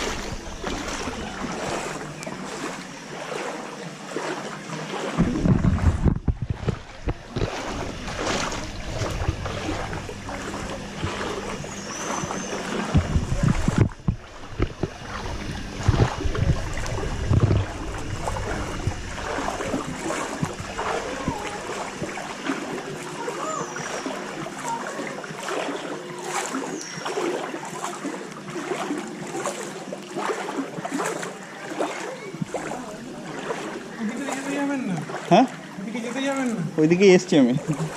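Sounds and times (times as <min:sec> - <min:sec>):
floodwater sloshing and splashing: 0:00.0 - 0:37.9
low bumps on microphone: 0:05.2 - 0:09.6.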